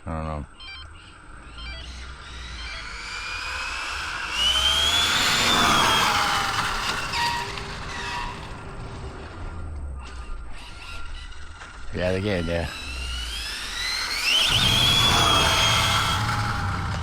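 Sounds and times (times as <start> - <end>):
electric motor whining: 0.6 - 17.0
rushing noise: 14.2 - 17.0.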